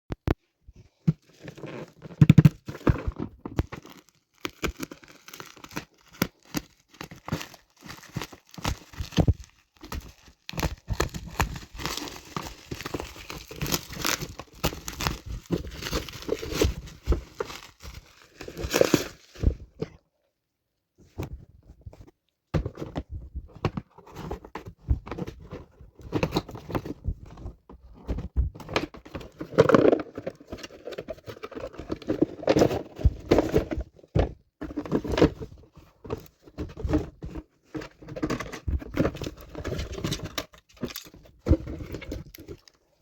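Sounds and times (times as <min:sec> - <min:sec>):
packaging crinkling and tearing: 0:01.3 - 0:19.5, 0:39.0 - 0:43.0.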